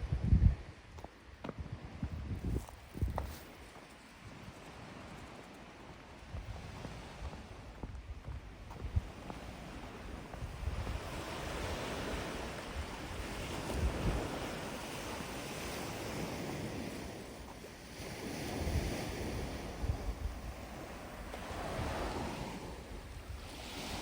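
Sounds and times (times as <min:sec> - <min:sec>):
wind buffeting microphone: 0:00.0 - 0:24.0
waves washing onto beach: 0:08.8 - 0:24.0.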